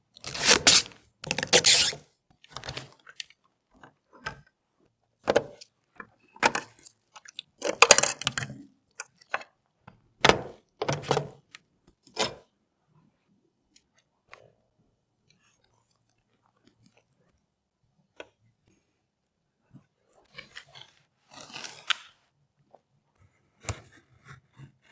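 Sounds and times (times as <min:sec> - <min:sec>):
computer parts and packaging handled: 0:00.2 - 0:02.0.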